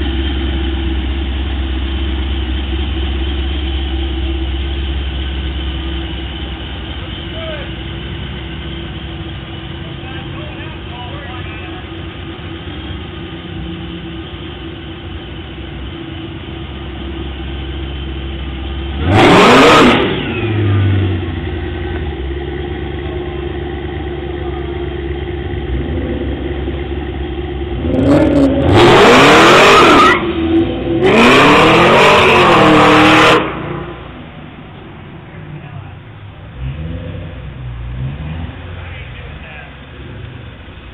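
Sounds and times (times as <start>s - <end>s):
car engine idling and revving: 0.0s - 40.9s.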